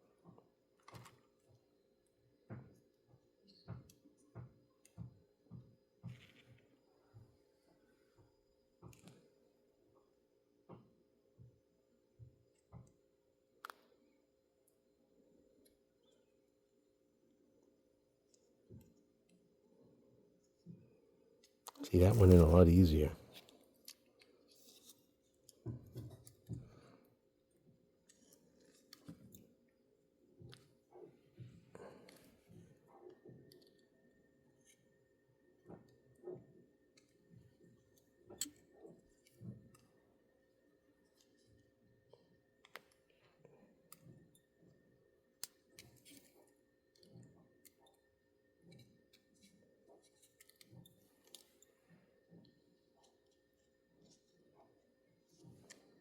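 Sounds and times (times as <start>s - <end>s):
soft handling noises: 2.6s - 9.6s, 21.4s - 27.1s, 45.4s - 56.0s
small parts clicking and tapping: 45.4s - 54.4s.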